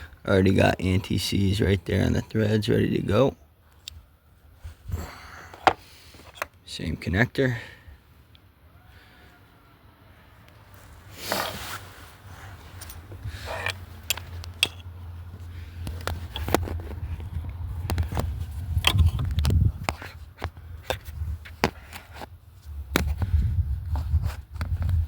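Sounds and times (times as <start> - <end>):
hand tools clicking and scraping: 11.2 - 22.3
low steady rumble: 11.8 - 21.4.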